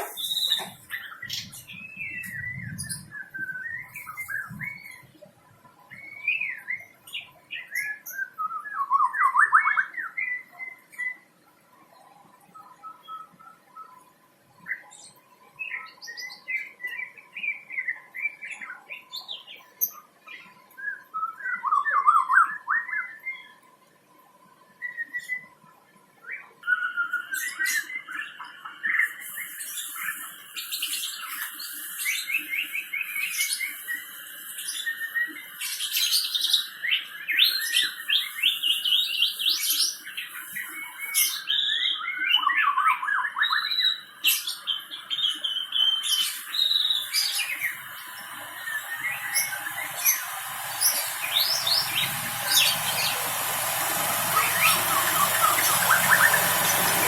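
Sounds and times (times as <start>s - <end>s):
songbird singing: 0.0s - 11.3s, 26.2s - 57.0s
high hissing sound: 46.2s - 57.0s.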